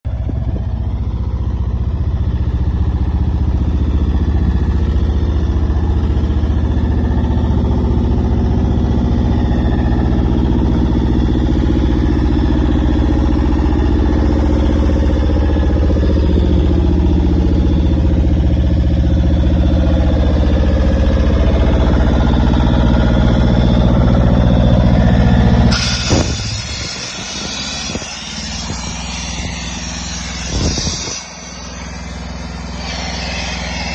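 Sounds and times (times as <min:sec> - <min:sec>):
air compressor engine running: 0:00.1 - 0:33.9
air hiss: 0:25.6 - 0:33.9.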